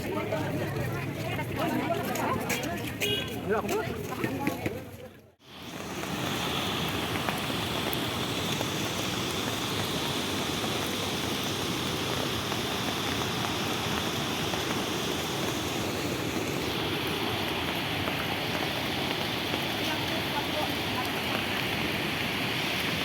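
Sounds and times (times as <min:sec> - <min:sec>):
waterfall roaring: 0:05.4 - 0:23.0.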